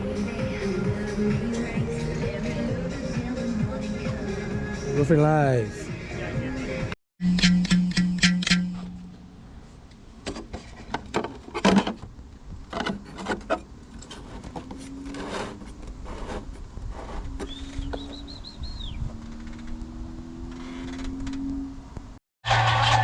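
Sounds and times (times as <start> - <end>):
bird warbling call: 17.4 - 19.1
engine rising in pitch: 17.5 - 23.0.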